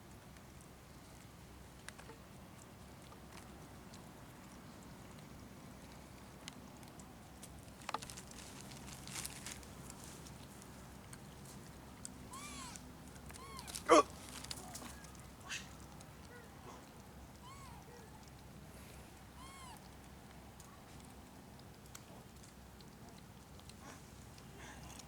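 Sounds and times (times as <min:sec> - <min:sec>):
crunchy rustle: 0:07.3 - 0:16.5.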